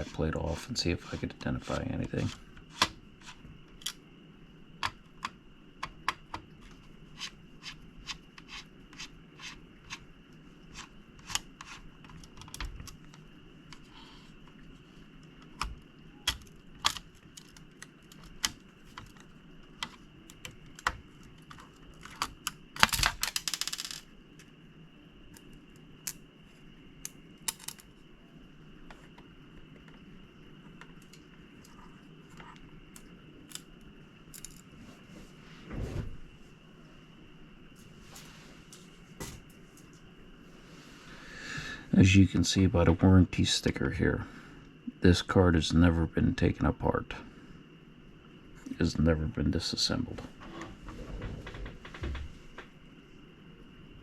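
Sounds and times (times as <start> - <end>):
scraping rustle: 50.2 - 52.6.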